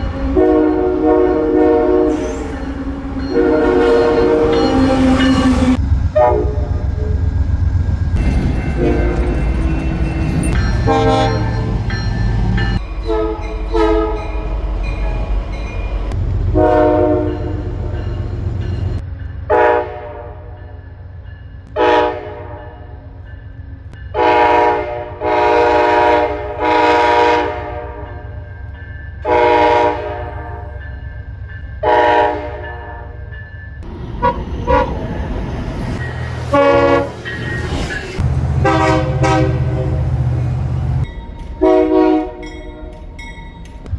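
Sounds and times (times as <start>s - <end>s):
train horn blasts: 0.0s - 7.2s, 10.5s - 11.9s, 13.0s - 14.4s, 16.5s - 18.1s, 19.5s - 20.5s, 21.7s - 22.9s, 24.1s - 28.3s, 29.2s - 30.7s, 31.8s - 33.2s, 34.2s - 35.2s, 36.4s - 43.1s
low rumble of passing train: 0.0s - 43.9s.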